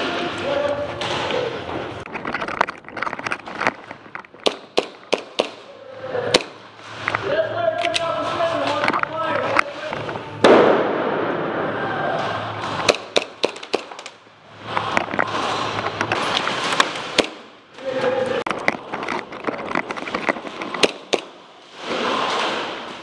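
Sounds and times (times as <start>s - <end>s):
airsoft guns firing: 4.4s - 6.7s, 12.6s - 14.2s, 16.2s - 17.6s, 20.6s - 21.5s.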